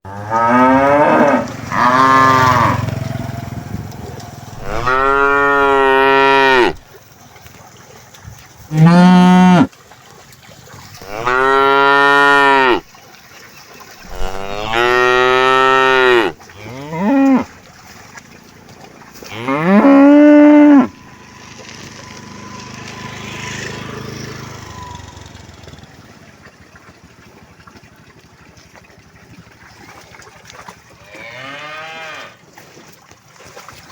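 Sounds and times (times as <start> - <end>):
cattle mooing: 0.1 - 3.4, 4.5 - 6.8, 8.7 - 9.7, 11.0 - 12.9, 14.0 - 17.5, 19.2 - 21.0, 31.1 - 32.4.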